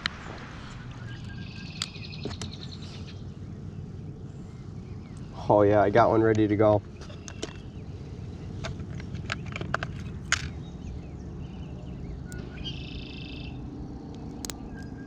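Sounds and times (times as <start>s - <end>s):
low outdoor rumble: 0.0s - 15.0s
sharp clicks: 1.2s - 2.6s, 12.3s - 12.5s, 14.1s - 15.0s
small animal trilling call: 12.3s - 13.6s.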